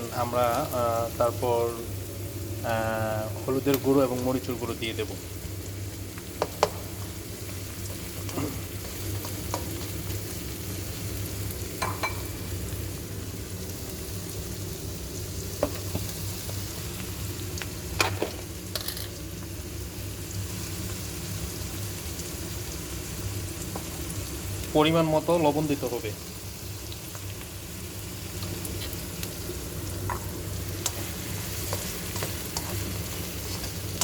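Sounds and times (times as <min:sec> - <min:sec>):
onions sizzling in oil: 0:00.0 - 0:34.0
spatula knocking and scraping pan: 0:06.4 - 0:06.8.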